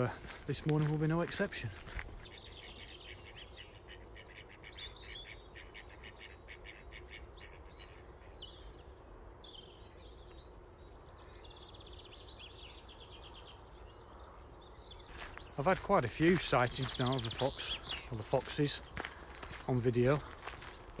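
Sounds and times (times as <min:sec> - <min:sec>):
songbirds singing: 0:00.0 - 0:21.0.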